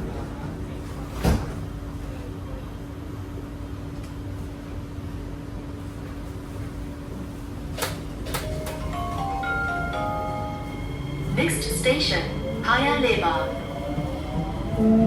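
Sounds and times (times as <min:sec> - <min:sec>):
train car hum: 0:00.0 - 0:15.0
train doors thudding shut: 0:01.2 - 0:01.7.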